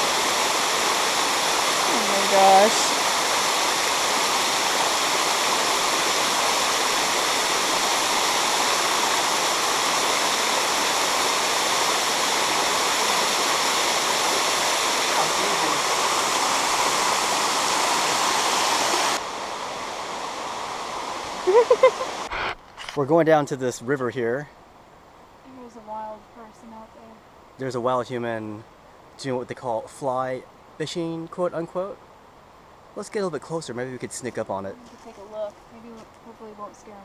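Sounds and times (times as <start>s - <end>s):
waterfall rushing: 0.0s - 22.3s
quieter water sound: 0.0s - 37.0s.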